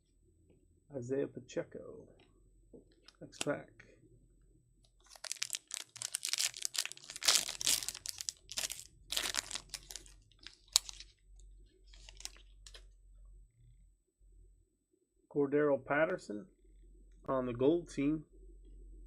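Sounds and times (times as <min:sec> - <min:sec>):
card pack wrapper crinkling: 0:05.0 - 0:11.1, 0:11.9 - 0:12.8.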